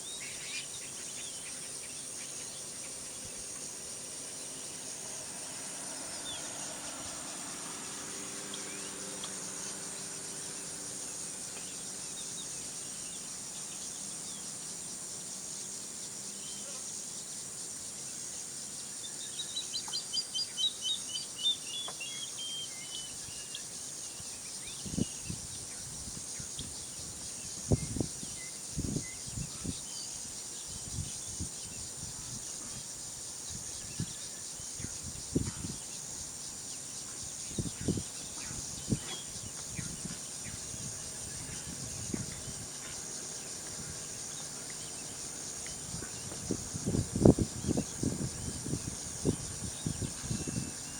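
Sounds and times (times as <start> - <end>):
bird chirping: 0.0 - 3.5, 18.9 - 50.9
insect drone: 0.0 - 50.9.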